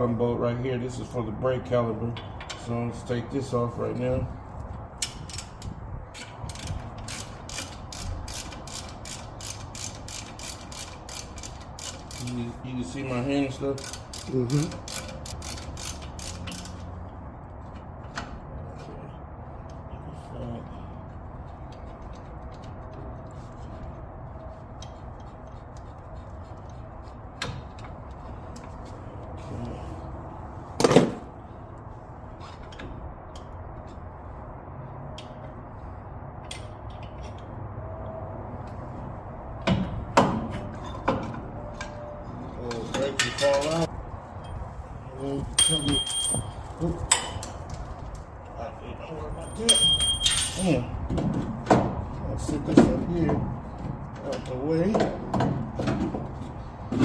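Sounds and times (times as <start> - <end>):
steady background noise: 0.0 - 57.0
ratchet wrench clicking: 6.2 - 12.4, 13.7 - 16.9.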